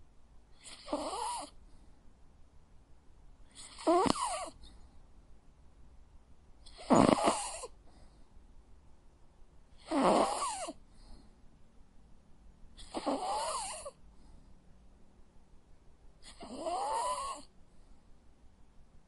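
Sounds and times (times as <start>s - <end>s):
dog snoring with whistling tone: 0.6s - 1.5s, 3.5s - 4.6s, 6.7s - 7.7s, 9.8s - 10.8s, 12.8s - 14.0s, 16.2s - 17.5s.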